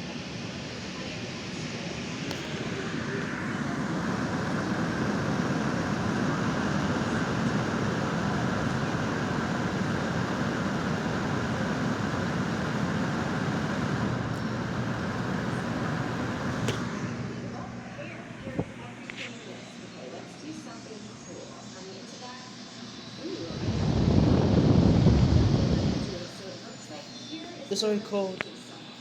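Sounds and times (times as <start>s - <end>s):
air conditioner fan blowing: 0.0s - 29.0s.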